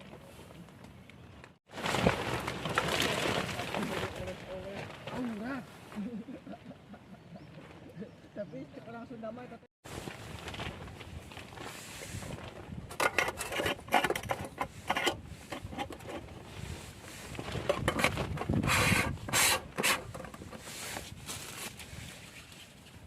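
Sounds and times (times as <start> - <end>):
rubbing and scraping: 11.6 - 23.0.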